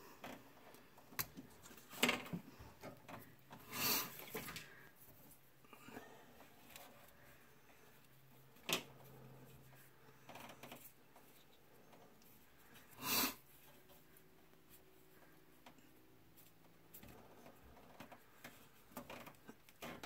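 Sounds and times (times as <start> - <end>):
hands rubbing tape on threads: 0.8 - 2.0.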